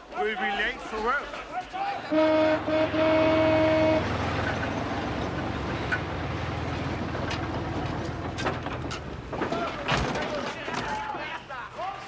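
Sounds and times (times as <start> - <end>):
low-pitched horn toots: 2.1 - 5.0
vehicle engine rumble: 2.4 - 9.9.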